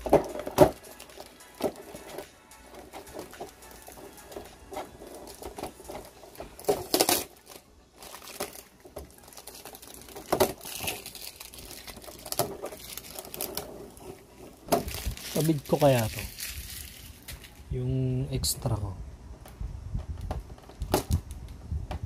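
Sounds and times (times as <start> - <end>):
packaging swishes: 0.0 - 17.6
packaging rustling: 0.0 - 17.7
packaging scraping: 0.0 - 17.7.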